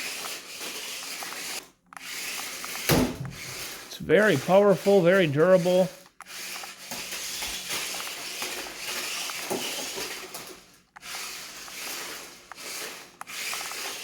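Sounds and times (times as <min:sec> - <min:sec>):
toy car scrubbing hiss: 0:00.0 - 0:14.0.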